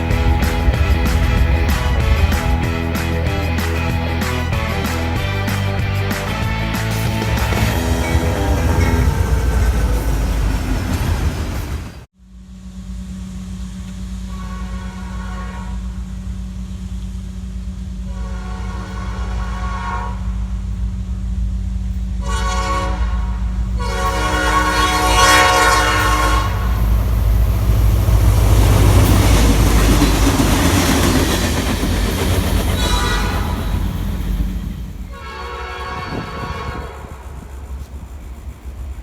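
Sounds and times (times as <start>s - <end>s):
locomotive engine rumble: 0.0s - 39.0s
train wheel noise: 0.0s - 39.0s
locomotive air horn blasts: 14.2s - 16.3s, 18.0s - 20.6s, 22.2s - 26.9s, 32.7s - 34.1s, 35.0s - 37.6s.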